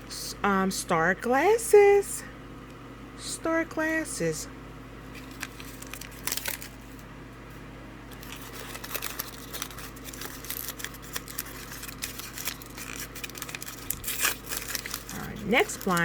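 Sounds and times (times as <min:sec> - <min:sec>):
faint steady hum: 0:00.0 - 0:16.0
plastic bag crinkling: 0:05.2 - 0:06.9, 0:08.1 - 0:16.0.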